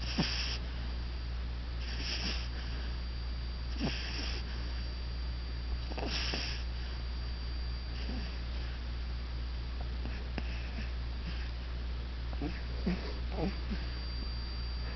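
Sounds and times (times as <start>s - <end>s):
puppy snoring: 0.0s - 0.7s, 1.8s - 3.0s, 3.7s - 4.8s, 5.8s - 7.0s, 7.9s - 8.8s, 10.0s - 11.6s, 12.3s - 14.0s.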